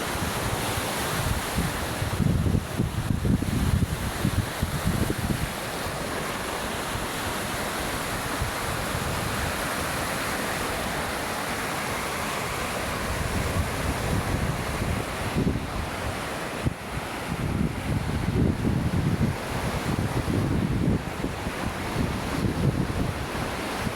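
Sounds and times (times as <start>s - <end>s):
wind buffeting microphone: 0.0s - 6.2s, 12.9s - 23.9s
waves breaking on beach: 0.0s - 23.9s.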